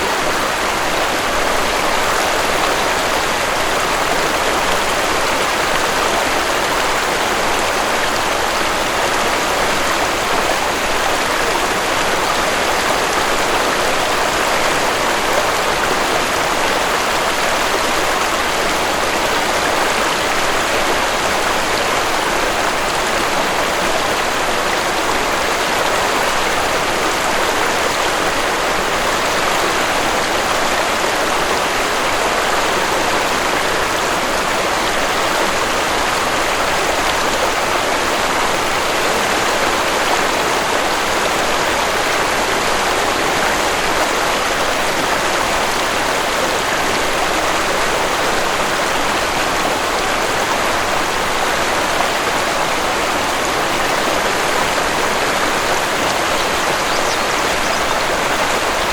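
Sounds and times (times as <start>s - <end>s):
waterfall rushing: 0.0s - 58.9s.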